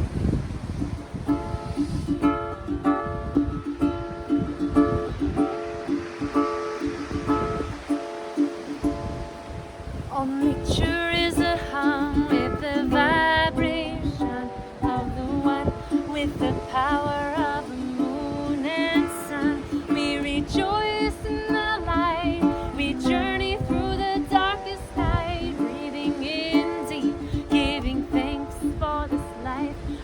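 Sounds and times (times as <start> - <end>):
ukulele strumming: 0.0 - 30.0
woman singing: 10.1 - 30.0.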